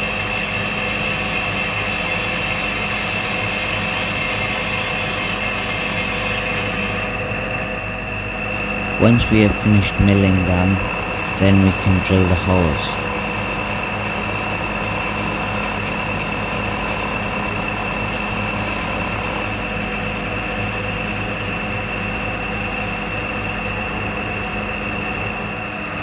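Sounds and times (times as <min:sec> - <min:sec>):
milling machine cutter whine: 0:00.3 - 0:09.0.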